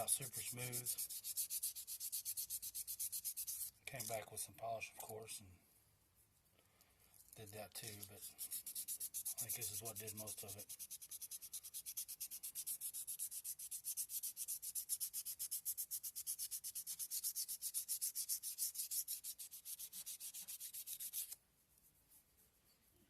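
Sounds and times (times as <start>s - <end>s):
sandpaper rasping on wood: 0.0s - 3.7s, 7.8s - 21.4s.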